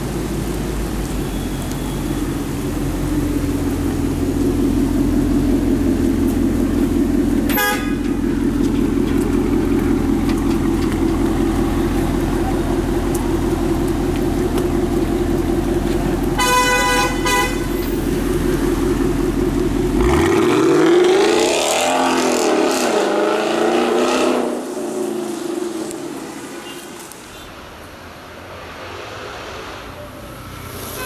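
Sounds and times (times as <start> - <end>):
car engine idling: 2.2 - 20.4
car horn honking: 7.5 - 8.2, 16.4 - 18.0.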